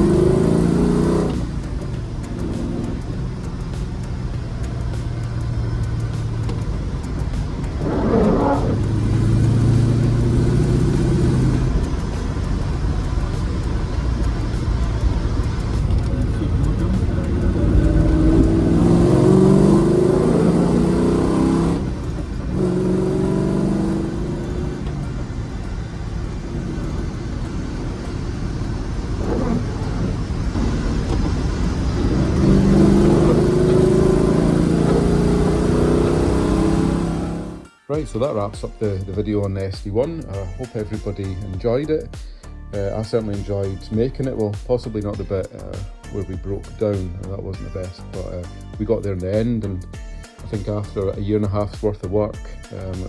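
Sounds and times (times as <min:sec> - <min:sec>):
engine revving: 0:00.0 - 0:37.7
driving rumble: 0:00.0 - 0:53.0.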